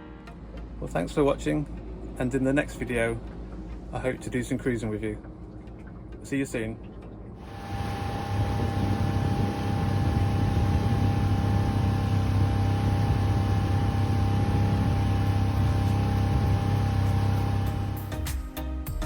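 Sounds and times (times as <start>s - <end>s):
outboard motor running: 0.0s - 18.5s
wind and water rushing: 7.4s - 18.0s.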